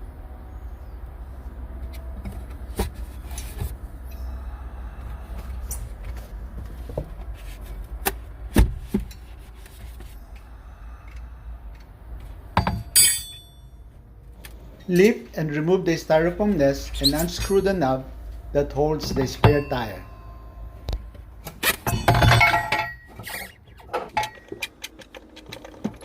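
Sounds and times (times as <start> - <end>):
tire wrench and jack knocking: 12.6 - 13.6, 19.0 - 26.0
squeaky scrape: 16.8 - 17.6, 23.0 - 24.9.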